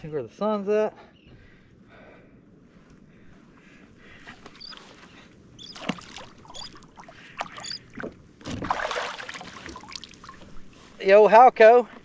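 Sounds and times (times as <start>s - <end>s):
water splashing around kayak: 4.4s - 12.0s.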